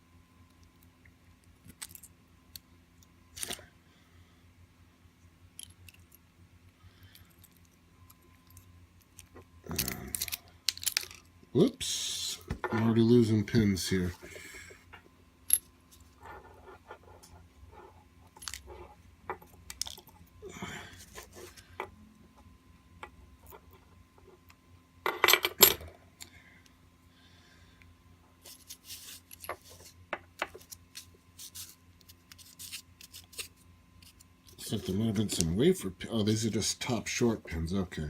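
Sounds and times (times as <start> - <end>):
small metal padlock parts clicking: 7.1 - 11.3.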